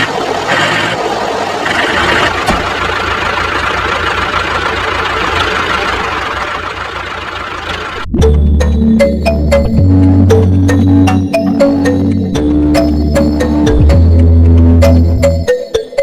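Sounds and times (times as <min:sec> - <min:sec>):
electronic music: 0:08.1 - 0:16.0.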